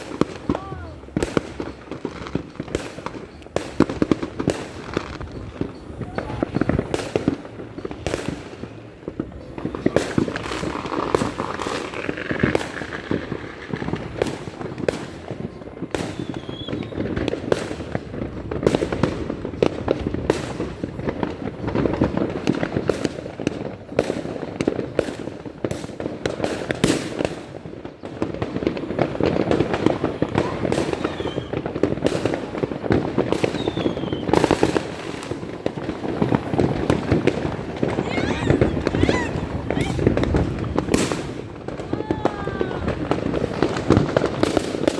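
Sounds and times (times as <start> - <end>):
firecrackers crackling: 0.0 - 44.9
fireworks bangs and pops: 0.0 - 44.9.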